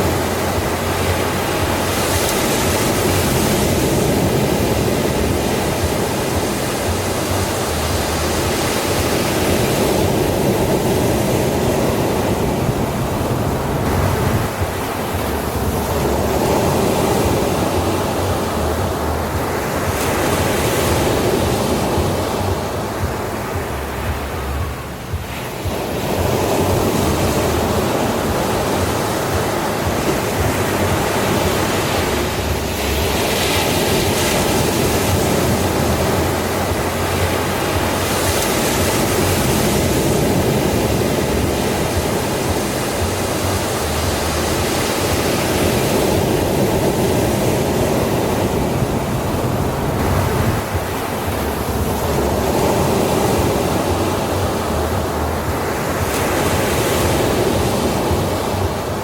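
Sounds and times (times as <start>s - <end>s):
ocean waves breaking on shore: 0.0s - 59.0s.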